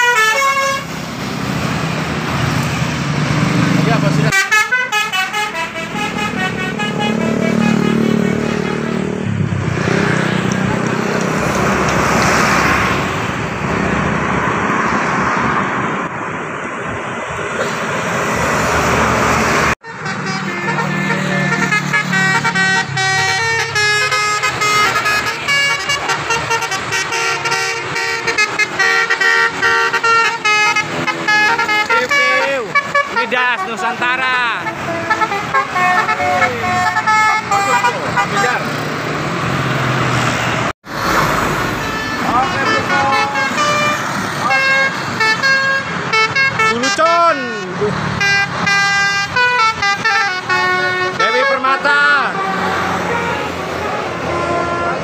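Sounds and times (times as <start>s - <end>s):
multi-trumpet bus air horns: 0.0s - 1.0s, 4.2s - 9.2s, 19.8s - 38.7s, 41.2s - 47.4s, 48.1s - 55.0s
bus engine: 0.0s - 55.0s
road noise: 0.0s - 55.0s.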